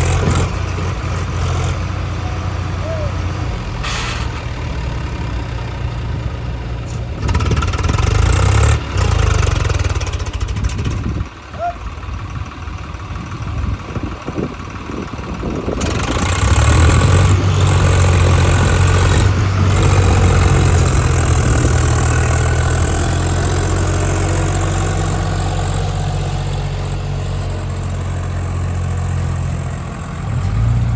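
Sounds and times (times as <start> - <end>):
heavy diesel engine running: 0.0 - 30.9
engine knocks: 6.9 - 30.9.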